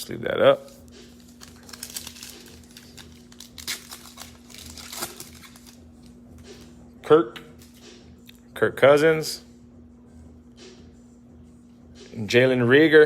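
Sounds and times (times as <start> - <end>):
plastic sleeve crinkling: 0.6 - 5.8.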